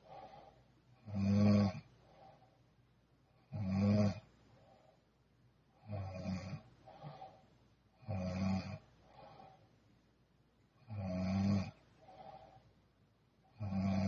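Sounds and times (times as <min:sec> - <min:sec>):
woman snoring: 0:01.0 - 0:01.9, 0:03.5 - 0:04.2, 0:05.8 - 0:07.4, 0:08.0 - 0:08.8, 0:10.9 - 0:12.5, 0:13.5 - 0:14.0.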